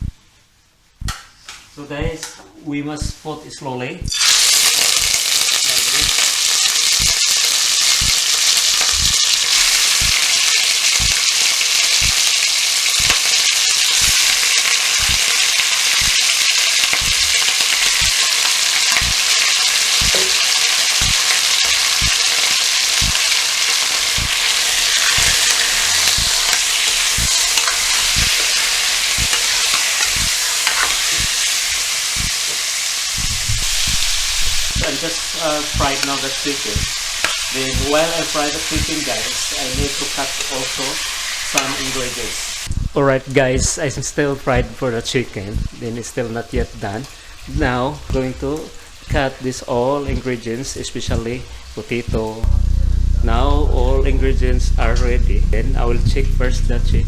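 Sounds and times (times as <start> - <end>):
chicken frying in hot oil: 4.1 - 42.8, 43.4 - 53.1
oil popping and crackling: 4.1 - 42.8.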